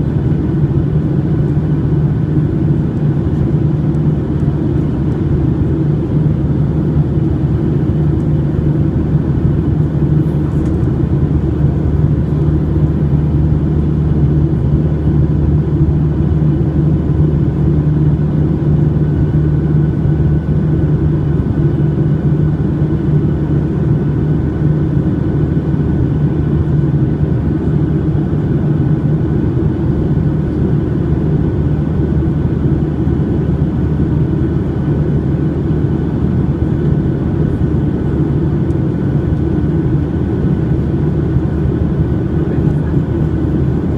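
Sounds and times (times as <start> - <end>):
jet engines droning in cabin: 0.0 - 43.9.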